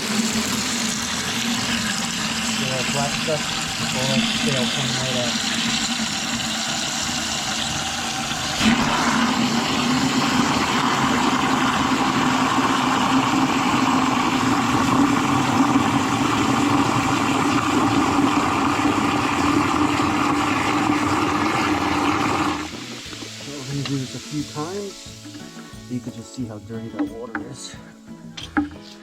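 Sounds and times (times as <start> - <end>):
water rushing through hose: 0.0 - 26.2.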